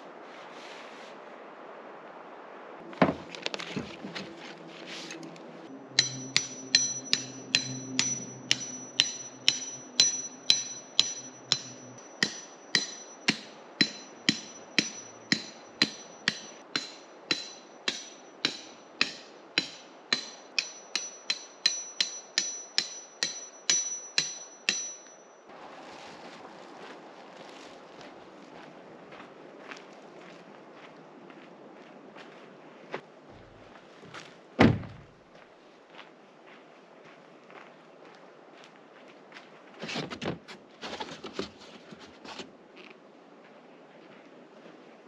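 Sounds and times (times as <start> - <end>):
steady high ring: 5.7 - 25.5
hammer striking tent stakes: 5.9 - 25.4.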